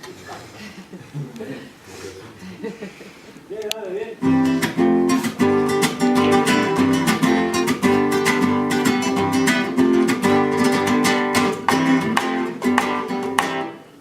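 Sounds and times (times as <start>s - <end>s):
acoustic guitar strumming: 4.2s - 14.0s.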